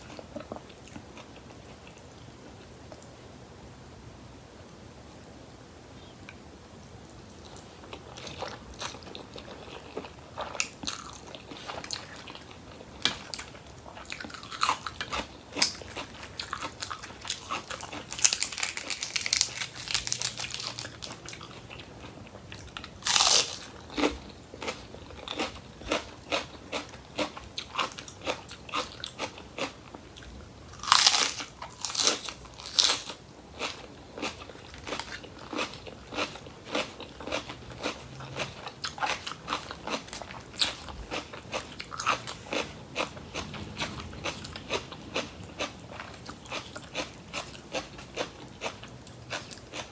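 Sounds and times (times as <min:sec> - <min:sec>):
crunchy chewing of raw vegetables: 0:00.0 - 0:03.1, 0:06.0 - 0:49.9.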